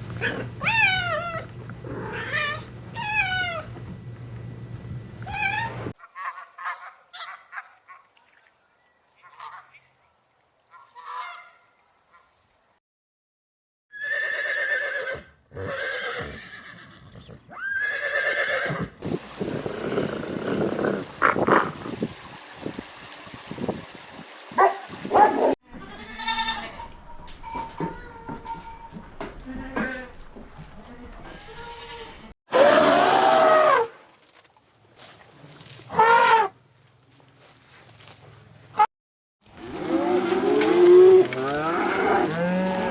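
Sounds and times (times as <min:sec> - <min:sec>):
farm animal calling: 0:00.0 - 0:03.9, 0:05.2 - 0:07.5, 0:25.2 - 0:33.7
horse whinnying: 0:13.9 - 0:21.0.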